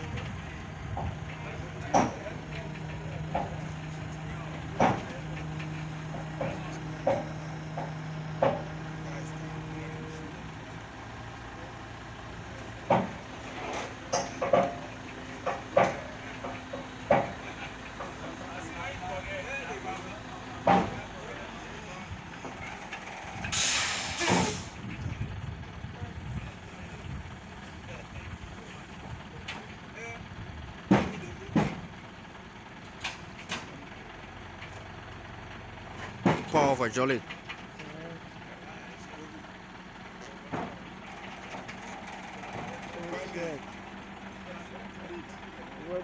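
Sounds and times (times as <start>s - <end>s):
heavy vehicle engine running: 0.0s - 46.0s
sharp metal clanks and knocks: 12.9s - 17.4s
sharp metal clanks: 14.1s - 14.9s.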